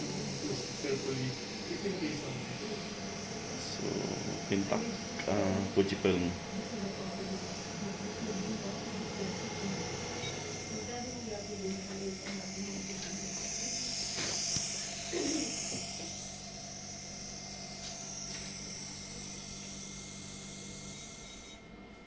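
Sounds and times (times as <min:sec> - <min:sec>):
small machine whirring: 0:00.0 - 0:22.0.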